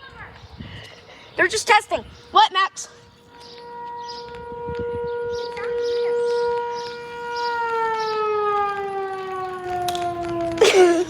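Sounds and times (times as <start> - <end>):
warning siren winding down: 1.4 - 11.0.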